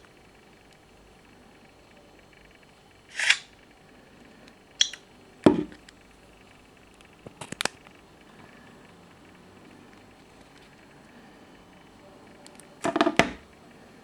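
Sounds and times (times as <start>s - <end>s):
sharp click: 4.8s - 5.1s
dull knock: 5.5s - 5.8s, 12.9s - 13.4s.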